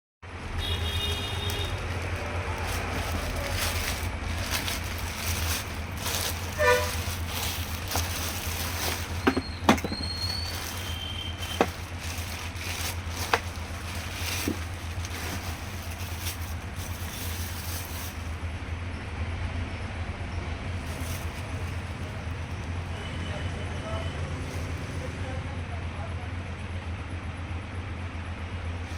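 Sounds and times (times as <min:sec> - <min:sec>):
traffic hum: 0:00.2 - 0:28.9
car horn toot: 0:00.5 - 0:03.0, 0:06.5 - 0:07.3, 0:09.2 - 0:11.8.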